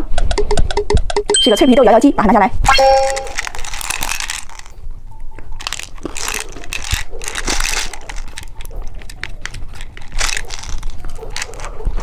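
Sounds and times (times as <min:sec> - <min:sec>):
crunching crispy candy: 0:03.4 - 0:12.0.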